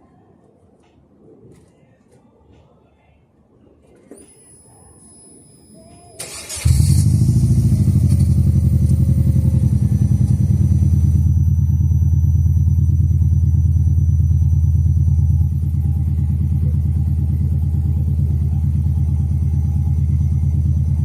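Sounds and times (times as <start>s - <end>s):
car engine cranking and idling: 4.3s - 21.0s.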